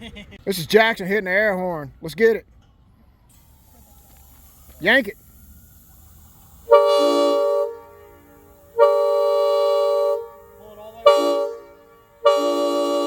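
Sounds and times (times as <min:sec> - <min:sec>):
train air horn blasts: 0:03.3 - 0:13.0.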